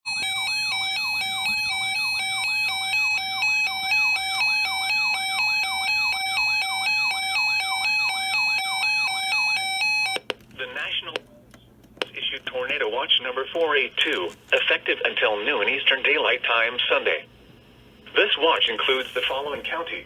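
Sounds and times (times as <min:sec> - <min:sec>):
warbling electronic alarm: 0:00.1 - 0:10.3.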